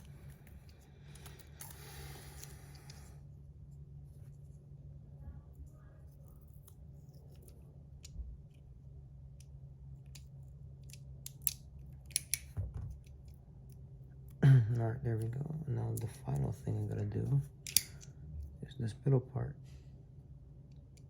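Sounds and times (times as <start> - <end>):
small plastic clicks: 9.4 - 13.8.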